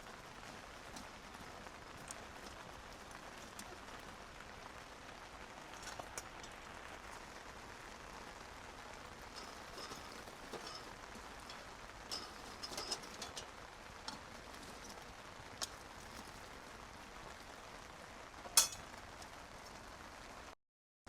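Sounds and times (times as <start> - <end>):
steady rain falling: 0.0 - 20.6.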